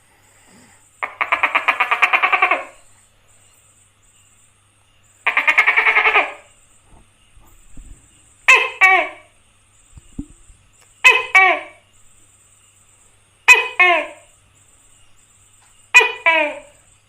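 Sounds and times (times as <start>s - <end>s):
gecko rasping calls: 1.0s - 3.1s, 5.1s - 6.9s, 8.0s - 11.9s.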